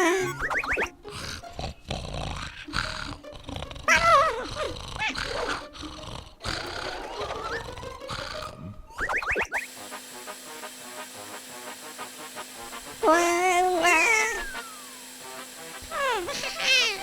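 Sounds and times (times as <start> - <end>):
cartoon animal growling and snarling: 1.0 - 8.6.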